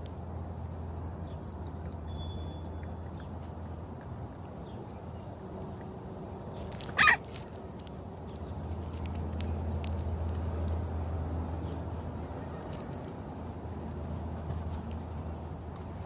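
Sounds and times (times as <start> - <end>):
groundhog squealing hiss: 7.0 - 7.2.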